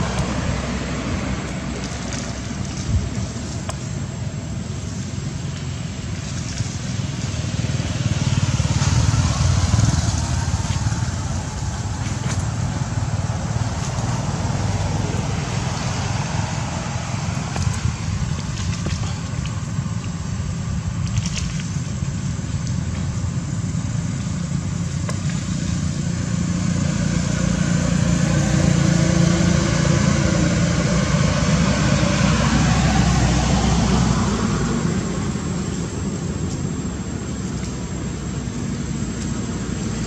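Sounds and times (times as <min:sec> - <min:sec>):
vehicle engine rumbling: 0:00.0 - 0:40.0.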